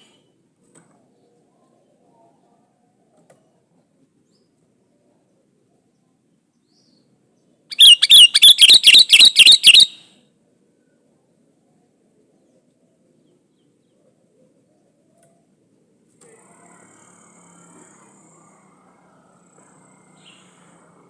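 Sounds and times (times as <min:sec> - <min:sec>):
bird singing whistled notes: 0:07.7 - 0:10.0.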